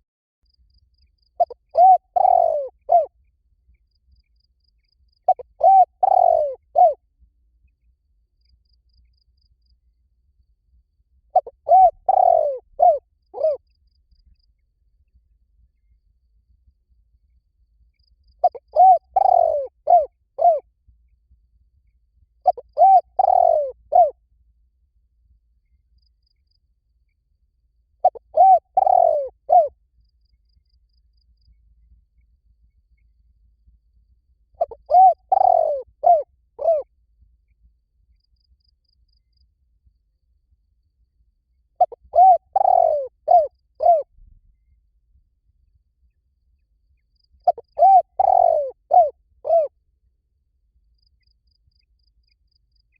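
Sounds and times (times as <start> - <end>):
dove cooing: 1.4 - 3.1, 5.3 - 7.0, 11.3 - 13.6, 18.4 - 20.7, 22.4 - 24.2, 28.0 - 29.8, 34.5 - 36.9, 41.8 - 44.1, 47.4 - 49.8.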